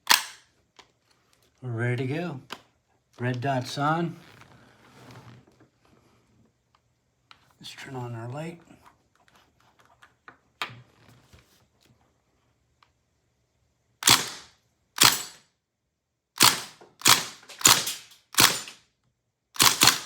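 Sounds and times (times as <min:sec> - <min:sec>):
bb rifle shots popping: 0:14.0 - 0:14.4, 0:15.0 - 0:15.4, 0:16.4 - 0:18.8, 0:19.6 - 0:20.0.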